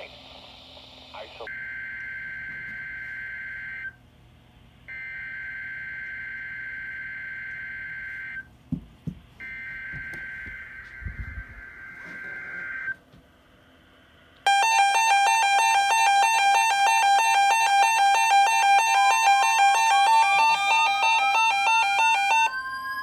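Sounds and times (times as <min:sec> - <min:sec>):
two-pitch electronic warning alarm: 0:01.5 - 0:04.0, 0:04.9 - 0:08.5, 0:09.4 - 0:13.0, 0:14.5 - 0:23.0.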